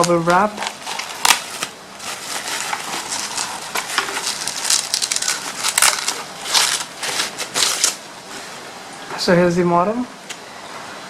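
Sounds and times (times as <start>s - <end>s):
plastic packaging crinkling: 0.0s - 8.1s.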